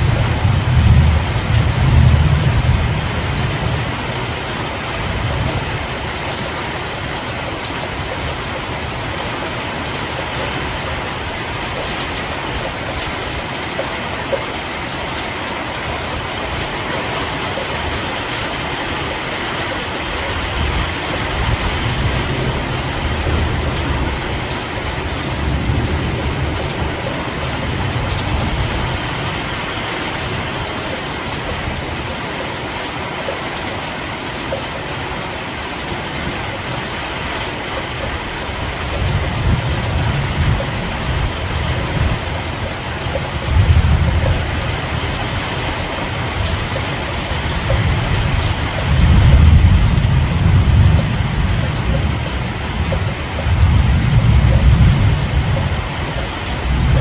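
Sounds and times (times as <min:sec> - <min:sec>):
heavy rain hissing: 0:00.0 - 0:57.0.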